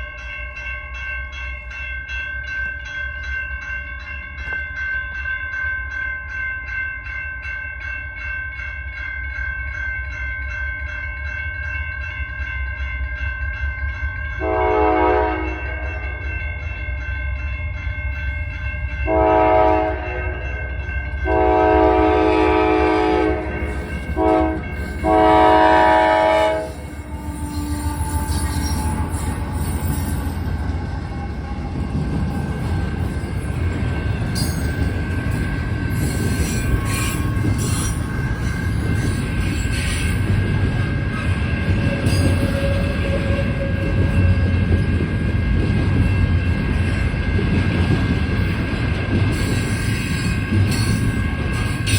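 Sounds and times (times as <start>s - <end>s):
crossing bell ringing: 0.0s - 51.9s
low train rumble: 0.0s - 51.9s
locomotive air horn blasts: 14.4s - 15.8s, 19.1s - 20.3s, 21.3s - 23.6s, 24.2s - 28.5s.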